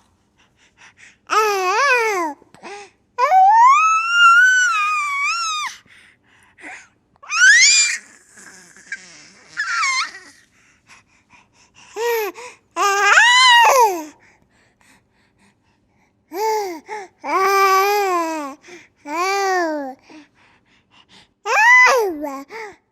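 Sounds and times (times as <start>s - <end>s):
baby laughing squeals: 7.3s - 10.4s.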